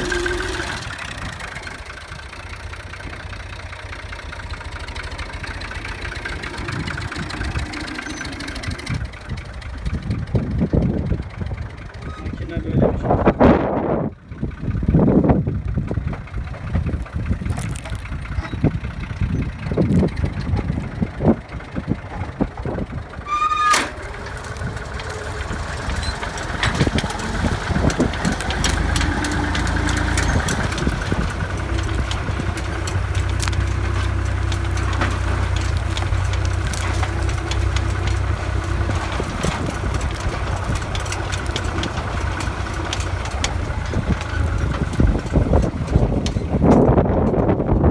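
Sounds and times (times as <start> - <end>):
tractor engine running: 0.0 - 47.9
wind noise: 8.5 - 23.3, 24.4 - 33.2, 37.4 - 47.9
brief rising squeal: 23.2 - 24.0.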